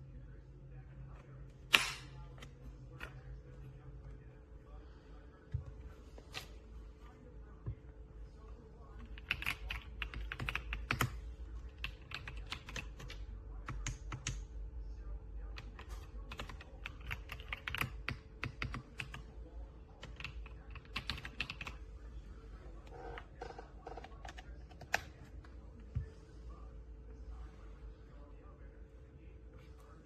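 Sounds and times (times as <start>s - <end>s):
typing on mechanical keyboard: 9.0s - 11.2s, 11.8s - 14.4s, 15.6s - 19.2s, 20.0s - 21.8s.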